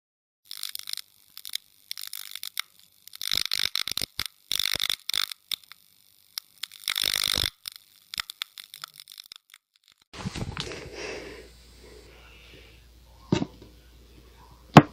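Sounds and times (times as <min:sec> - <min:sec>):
plastic wrapper crinkling: 0:00.5 - 0:10.7.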